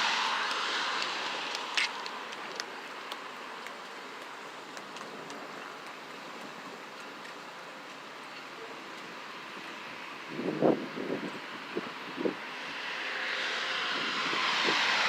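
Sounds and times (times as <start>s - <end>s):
storm wind rushing: 0.0s - 1.8s, 10.3s - 15.0s.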